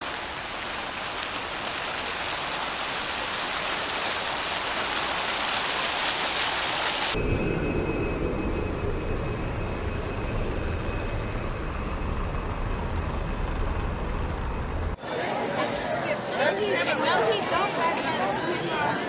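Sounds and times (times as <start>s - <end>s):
heavy rain hissing: 0.0s - 15.0s
low steady rumble: 7.2s - 15.0s.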